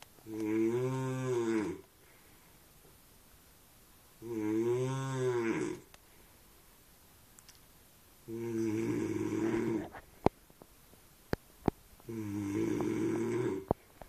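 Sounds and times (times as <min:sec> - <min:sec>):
man snoring with low moo-like tone: 0:00.3 - 0:01.8, 0:04.2 - 0:05.9, 0:08.3 - 0:10.0, 0:12.1 - 0:13.8
sharp clicks: 0:07.3 - 0:07.7.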